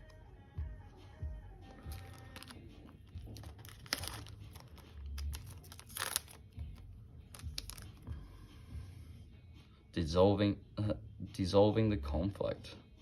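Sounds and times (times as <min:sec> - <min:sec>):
trading cards rustling: 0:01.7 - 0:08.2.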